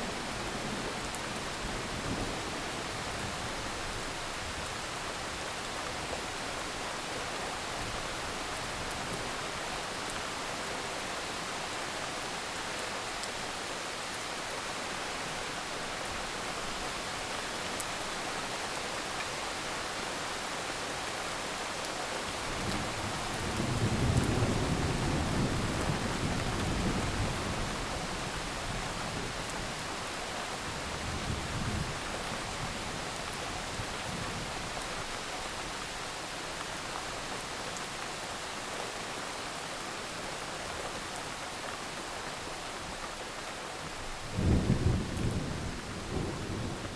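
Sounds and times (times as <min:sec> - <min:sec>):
steady rain falling: 0:00.0 - 0:46.9
low rumble of thunder: 0:22.6 - 0:29.5, 0:44.3 - 0:46.9.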